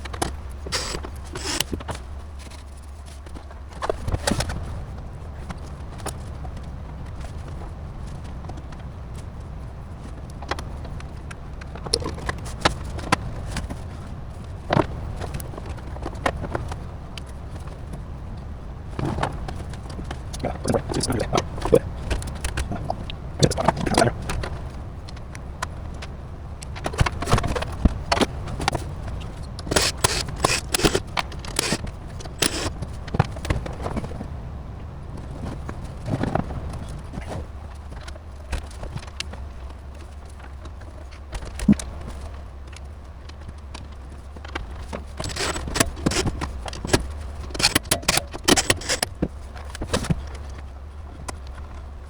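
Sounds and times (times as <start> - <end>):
hardware clicks and scrapes: 0.0 - 4.6, 11.7 - 13.6, 20.3 - 24.6, 26.7 - 34.1, 43.7 - 50.4
steady low hum: 17.4 - 27.2, 28.4 - 37.7.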